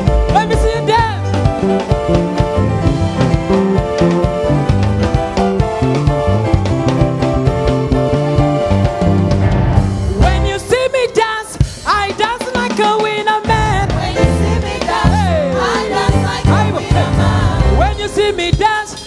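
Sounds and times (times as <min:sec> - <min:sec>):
bass guitar: 0:00.0 - 0:11.0, 0:13.5 - 0:18.2
drums: 0:00.0 - 0:19.0
worship band playing dance groove: 0:00.0 - 0:19.0
wordless gliding vocal: 0:13.6 - 0:18.3.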